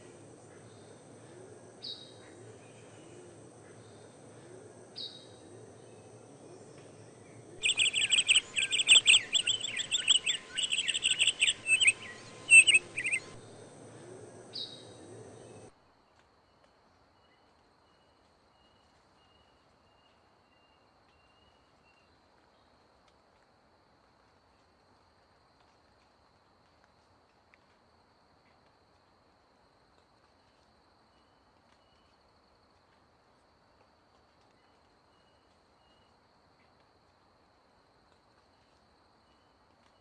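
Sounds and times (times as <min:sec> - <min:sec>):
bird chirping: 0:00.0 - 0:15.7.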